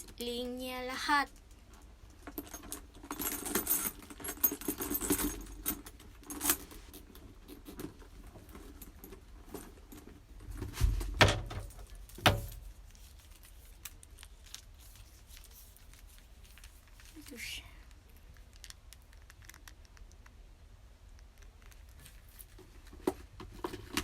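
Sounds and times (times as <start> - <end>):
handbag hardware jingling: 2.2 - 6.8, 11.6 - 12.9
heavier knocks: 10.8 - 12.6.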